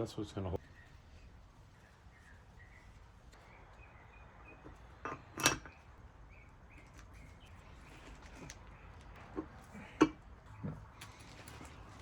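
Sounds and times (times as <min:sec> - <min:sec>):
faint bird chirps: 0:00.6 - 0:04.8.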